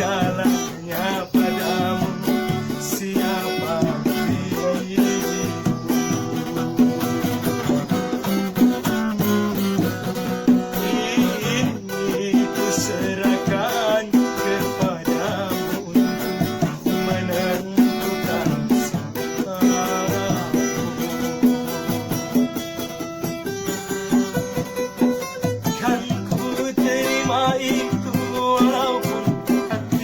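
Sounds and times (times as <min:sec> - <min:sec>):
acoustic guitar instrumental music: 0:00.0 - 0:30.0.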